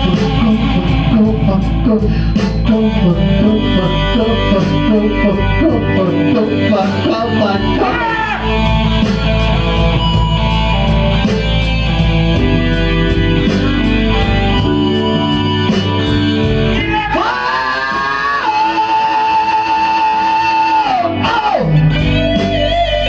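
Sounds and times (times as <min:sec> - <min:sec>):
hi-hat beat: 0:00.0 - 0:06.2
blues-rock band playing: 0:00.0 - 0:23.0.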